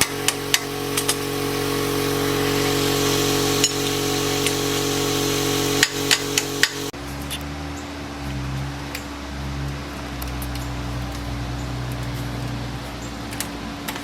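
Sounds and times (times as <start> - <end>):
steady machine hum: 0.0 - 7.0.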